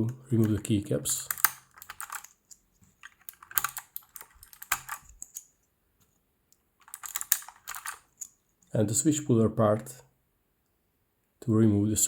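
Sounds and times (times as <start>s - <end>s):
keycaps pulled off keyboard: 0.4s - 5.5s, 6.8s - 8.4s.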